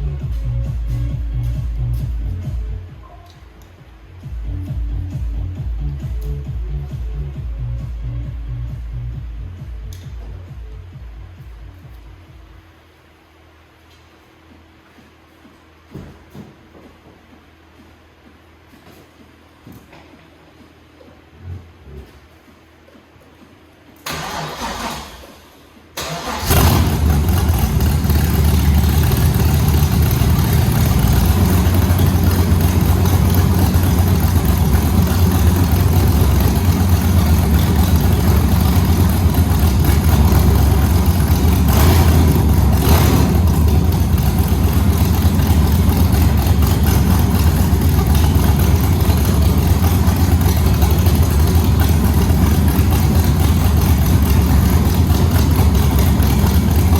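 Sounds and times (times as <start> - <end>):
engine cranking: 24.1 - 25.3, 26.0 - 56.9
engine idling loudly: 26.4 - 56.9.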